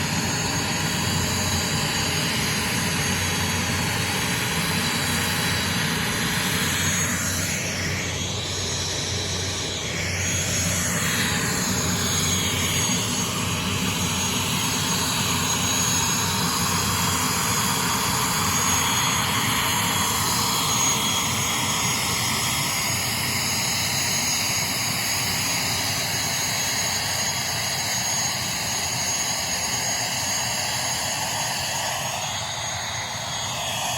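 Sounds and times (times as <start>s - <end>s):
aircraft engines running: 0.0s - 33.9s.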